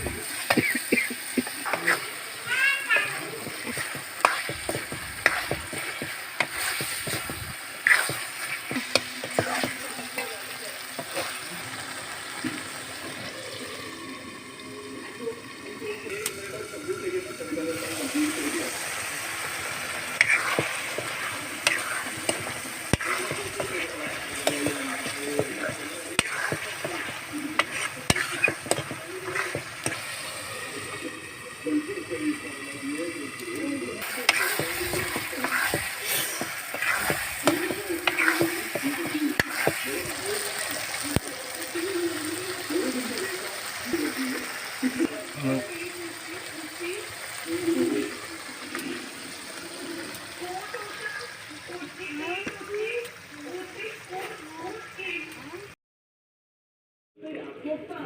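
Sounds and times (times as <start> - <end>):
spatula scraping a pan: 0.0 - 11.6, 17.8 - 30.5, 34.0 - 41.2
food sizzling in a pan: 0.0 - 55.7.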